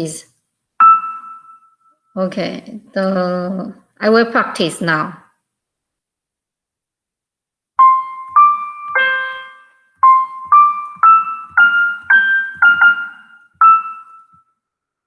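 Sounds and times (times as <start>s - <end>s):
piano melody: 0.8s - 1.8s, 7.8s - 14.4s.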